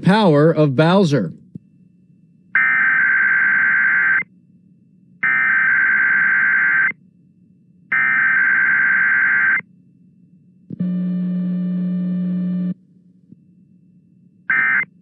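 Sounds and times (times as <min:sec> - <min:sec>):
steady buzzing tone: 0:10.8 - 0:12.8.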